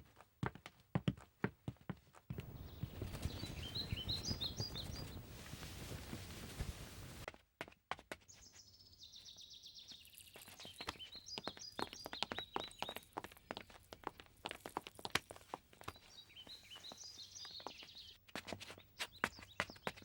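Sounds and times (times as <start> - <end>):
birds chirping: 2.3 - 6.5, 8.3 - 20.0
dense low rustling: 2.4 - 7.3.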